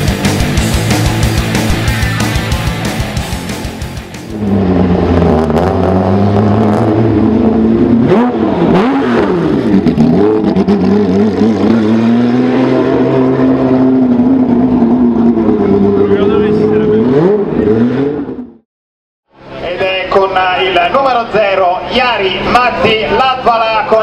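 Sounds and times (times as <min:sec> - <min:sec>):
car engine idling and revving: 0:00.0 - 0:18.6.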